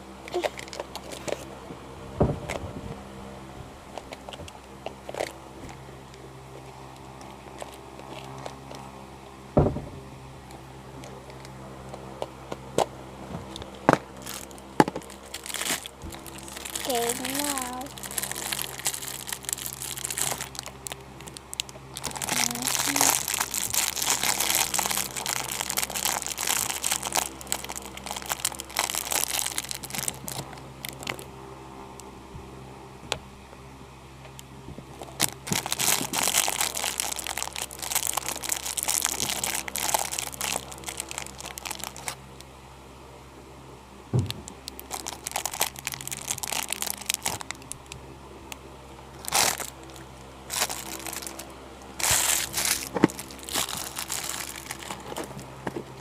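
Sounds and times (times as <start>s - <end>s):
slime squeezed by hand crackling: 15.2s - 31.3s, 49.2s - 51.4s, 52.0s - 55.4s.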